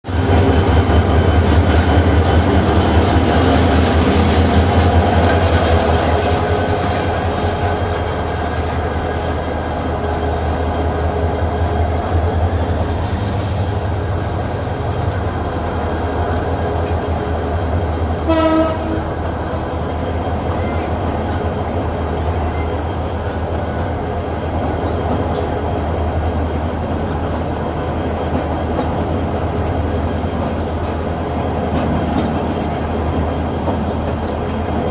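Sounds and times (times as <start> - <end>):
train rumbling and rattling: 0.0 - 34.9
train horn blast: 18.2 - 19.1.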